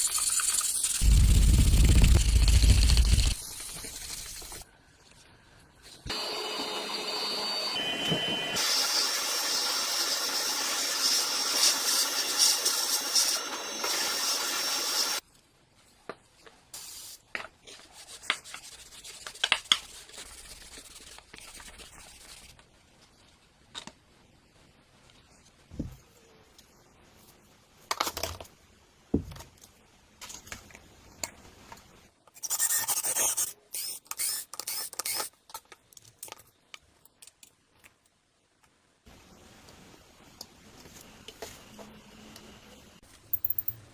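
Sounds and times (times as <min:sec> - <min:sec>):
motorised tool running: 0:01.0 - 0:03.4
small parts clicking: 0:43.2 - 0:43.8.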